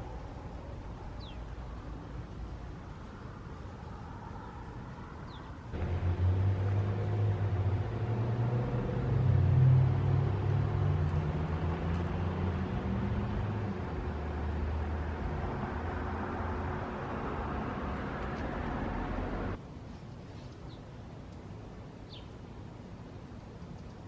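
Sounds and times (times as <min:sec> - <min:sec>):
low motor hum: 0:05.8 - 0:17.5.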